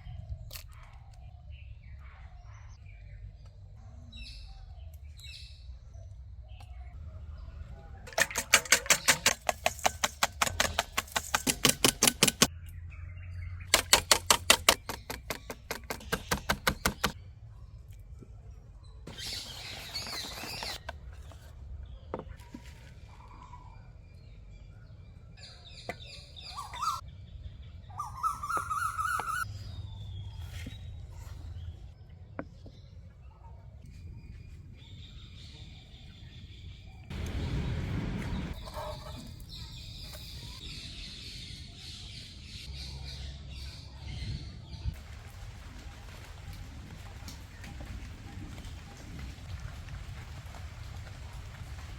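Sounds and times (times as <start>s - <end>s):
birds chirping: 0.0s - 45.0s
whisk clicking in a bowl: 8.1s - 12.5s, 13.7s - 17.2s.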